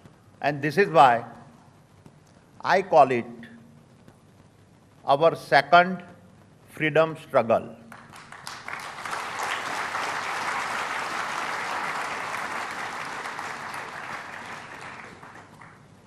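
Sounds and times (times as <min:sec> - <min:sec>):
audience applauding: 0:07.9 - 0:15.9.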